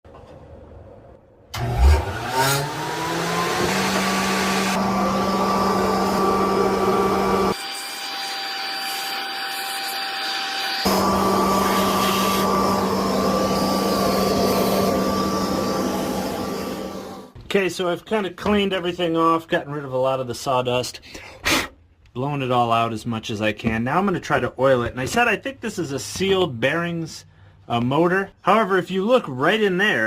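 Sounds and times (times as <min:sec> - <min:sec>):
blower motor squealing: 0:01.6 - 0:17.3.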